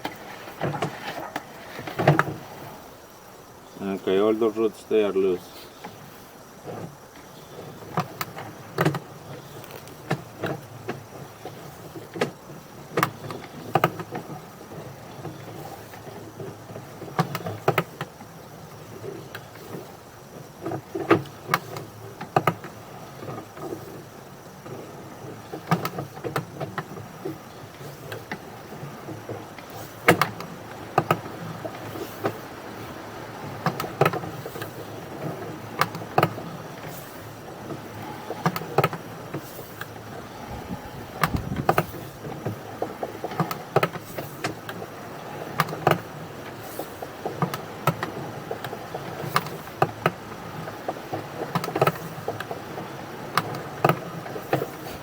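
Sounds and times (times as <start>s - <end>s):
steady low hum: 39.1s - 43.3s.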